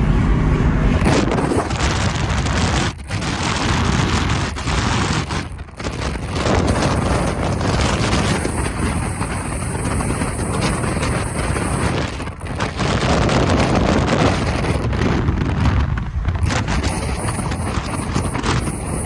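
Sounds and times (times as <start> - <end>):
loud car engine and exhaust: 0.0 - 4.9, 6.4 - 19.0
wind buffeting microphone: 0.0 - 19.0.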